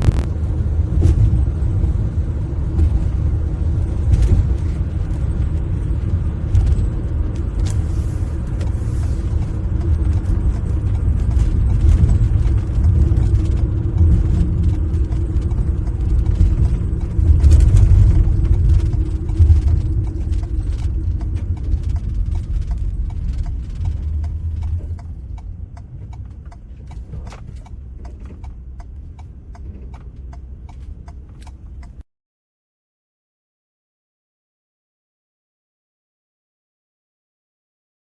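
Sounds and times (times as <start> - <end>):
vehicle engine and road noise: 0.0 - 32.0
faint clicks and rattles: 3.8 - 32.0.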